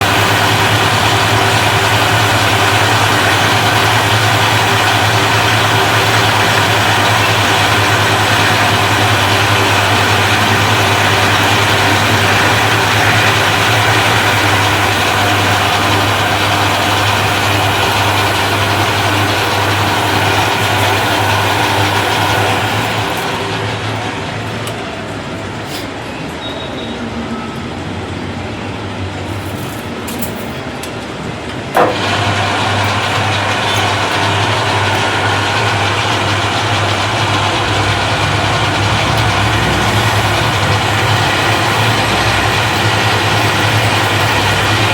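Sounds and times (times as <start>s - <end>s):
lathe running with hum and hiss: 0.0s - 26.0s, 31.4s - 44.9s.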